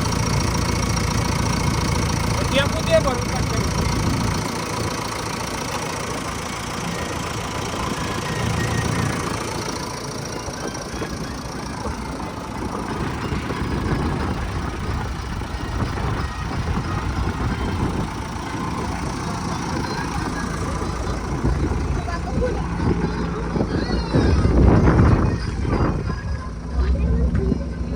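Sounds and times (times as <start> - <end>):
heavy diesel engine running: 0.0 - 27.9.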